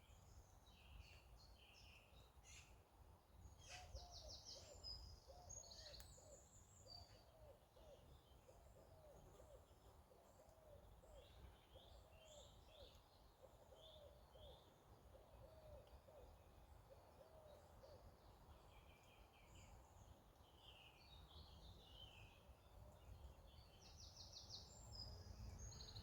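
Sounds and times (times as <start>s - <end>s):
small birds chirping and trilling: 18.0s - 26.0s.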